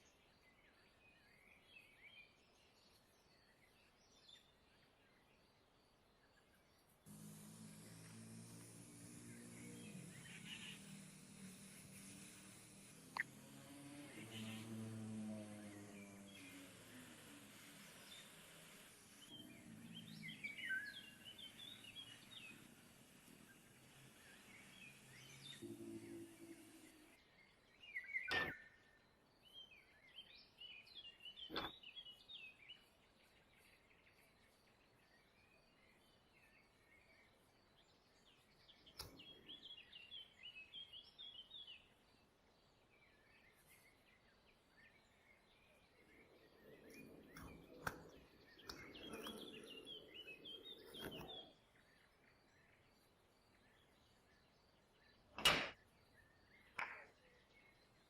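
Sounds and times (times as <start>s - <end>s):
small birds chirping: 0.0s - 58.0s.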